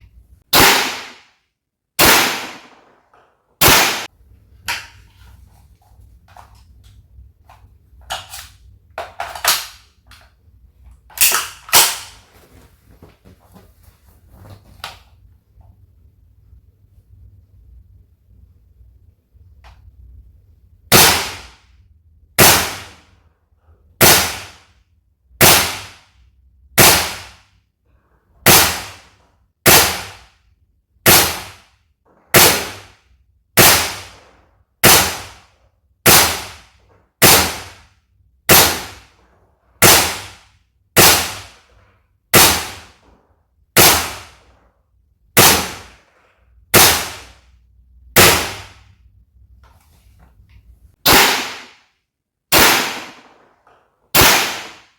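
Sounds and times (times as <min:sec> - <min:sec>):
airsoft rifle shots: 0:00.5 - 0:01.4, 0:02.0 - 0:04.1, 0:20.9 - 0:21.7, 0:22.4 - 0:23.1, 0:24.0 - 0:24.7, 0:25.4 - 0:26.1, 0:26.8 - 0:27.5, 0:28.4 - 0:30.3, 0:31.0 - 0:31.7, 0:32.3 - 0:33.0, 0:33.6 - 0:37.9, 0:38.5 - 0:39.1, 0:39.8 - 0:41.6, 0:42.3 - 0:43.0, 0:43.8 - 0:44.4, 0:45.4 - 0:46.0, 0:46.7 - 0:47.4, 0:48.2 - 0:48.8, 0:51.0 - 0:54.9.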